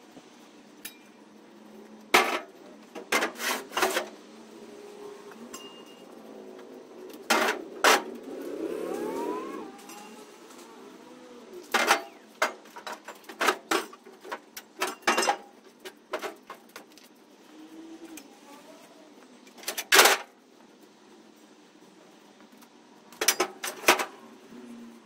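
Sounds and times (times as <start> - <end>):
scrap metal clanking: 2.1 - 4.2, 7.2 - 8.2, 11.6 - 15.5.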